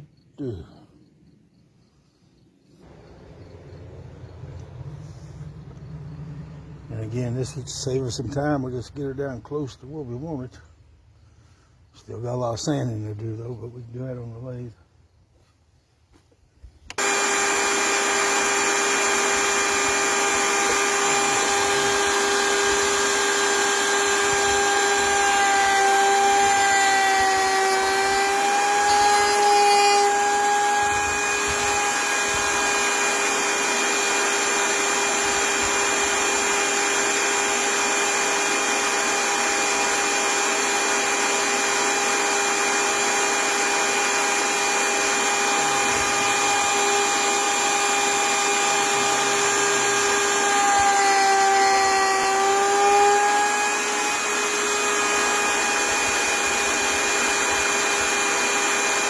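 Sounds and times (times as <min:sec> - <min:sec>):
power tool cutting wood: 0:02.8 - 0:10.4, 0:16.9 - 0:59.0.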